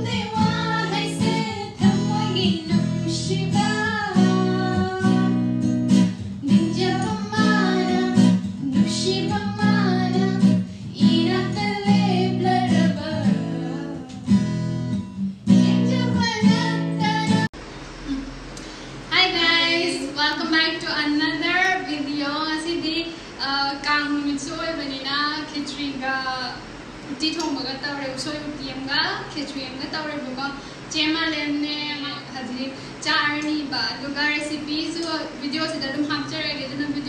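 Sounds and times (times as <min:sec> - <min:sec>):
acoustic guitar strumming: 0:00.0 - 0:17.5
person singing: 0:06.4 - 0:14.3.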